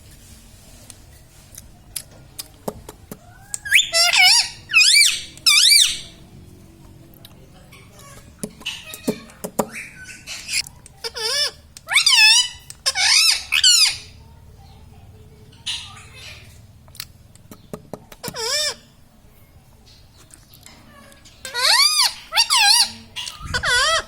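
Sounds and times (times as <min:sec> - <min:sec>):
parrot harsh wavering calls: 0:03.2 - 0:06.2, 0:08.6 - 0:14.1, 0:18.2 - 0:18.9, 0:21.4 - 0:24.0.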